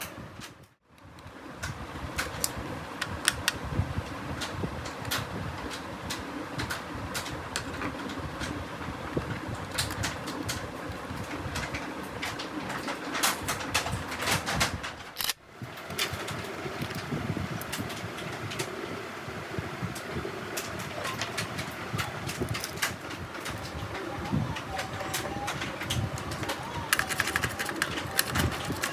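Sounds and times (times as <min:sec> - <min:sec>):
steady low hum: 0:00.0 - 0:28.9
sharp clicks and taps: 0:25.5 - 0:28.9.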